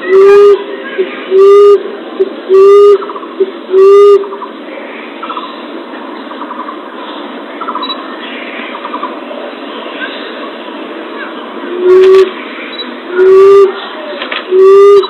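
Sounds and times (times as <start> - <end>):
faint chirping trills: 6.2 - 9.1, 11.8 - 15.0
dove hooting: 11.7 - 12.4, 13.1 - 15.0.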